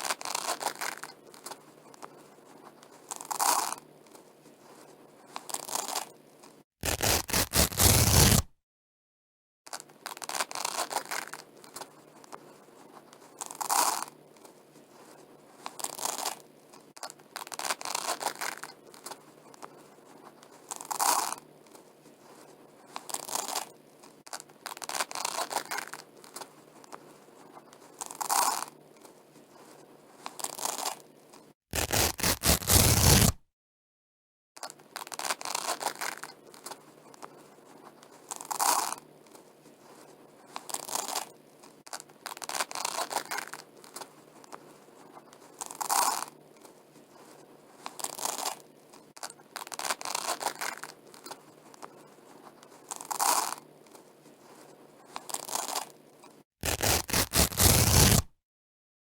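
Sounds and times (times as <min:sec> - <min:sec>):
velcro ripping: 0:00.0 - 0:01.1, 0:05.4 - 0:06.1, 0:06.8 - 0:08.5, 0:10.0 - 0:11.4, 0:15.8 - 0:16.4, 0:17.4 - 0:18.7, 0:23.0 - 0:23.7, 0:24.3 - 0:26.0, 0:30.3 - 0:31.0, 0:31.7 - 0:33.4, 0:35.0 - 0:36.3, 0:40.6 - 0:41.3, 0:41.9 - 0:43.6, 0:45.6 - 0:46.4, 0:47.9 - 0:48.6, 0:49.2 - 0:51.3, 0:52.9 - 0:53.6, 0:55.2 - 0:55.9, 0:56.6 - 0:58.3.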